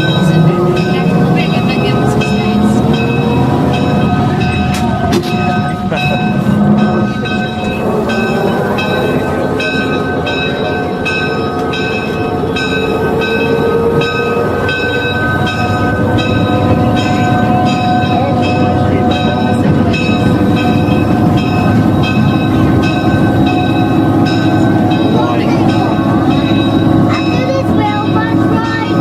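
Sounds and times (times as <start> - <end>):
bell ringing: 0.0 - 29.0
rail bus motor running: 0.0 - 29.0.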